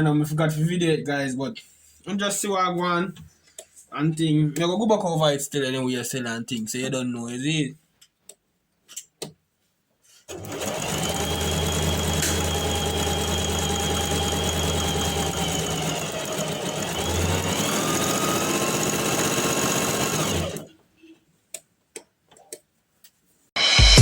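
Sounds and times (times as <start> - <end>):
sewing machine motor whine: 10.3 - 20.7.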